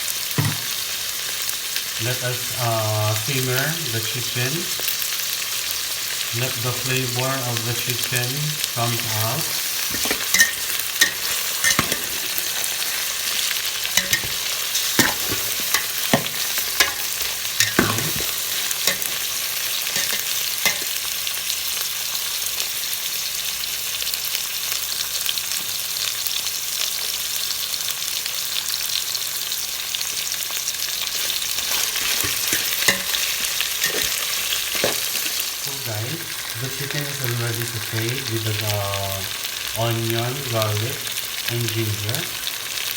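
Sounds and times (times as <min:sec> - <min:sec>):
food sizzling in a pan: 0:00.0 - 0:42.9
stirring clicks against pan: 0:14.0 - 0:19.2, 0:19.9 - 0:21.0.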